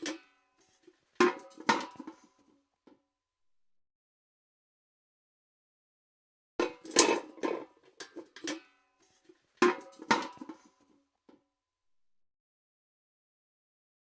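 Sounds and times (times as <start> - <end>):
metal bucket clanking: 0.0 - 2.3, 6.6 - 10.8.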